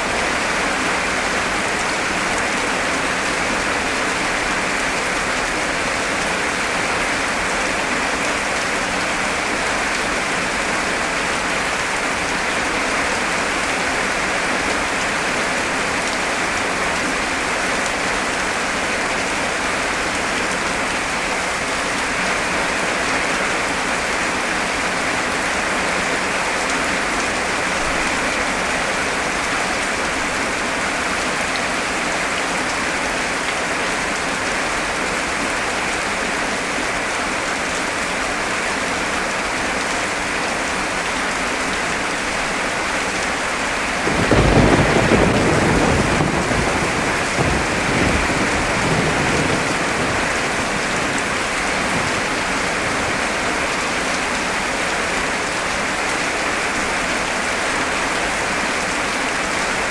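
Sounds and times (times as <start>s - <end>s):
heavy rain: 0.0s - 59.9s
thunderclap rumbling: 44.1s - 52.3s.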